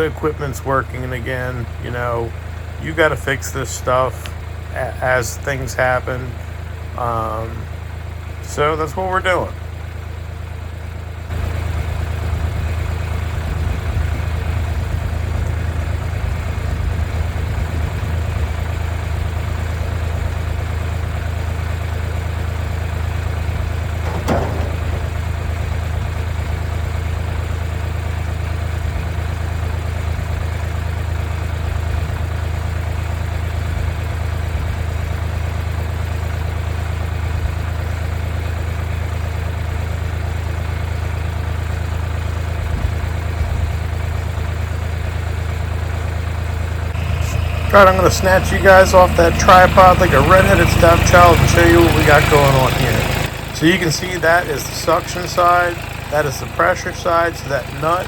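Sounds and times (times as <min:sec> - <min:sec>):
diesel tractor engine idling: 0:00.0 - 0:58.0
short knock: 0:24.0 - 0:25.6.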